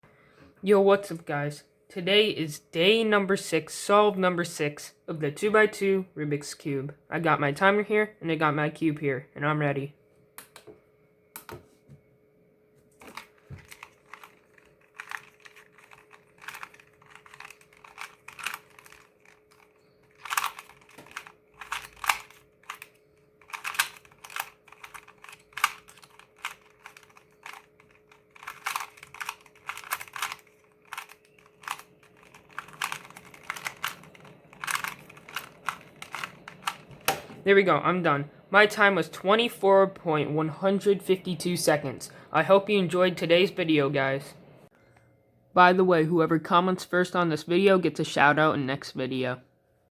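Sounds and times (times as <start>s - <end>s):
plastic puzzle cube clicking: 13.1s - 37.2s.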